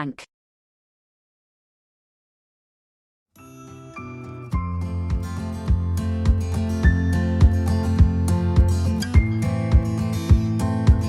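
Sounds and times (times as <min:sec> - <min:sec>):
guitar-led instrumental music: 0:03.4 - 0:11.0.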